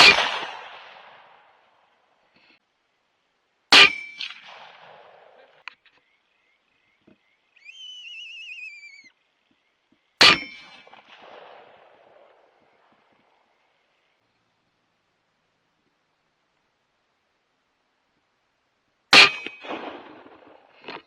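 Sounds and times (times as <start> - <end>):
rifle shots with echo: 0.0 - 1.6, 3.7 - 5.6, 10.2 - 12.7, 19.1 - 20.8
wavering high whistled call: 7.6 - 9.2.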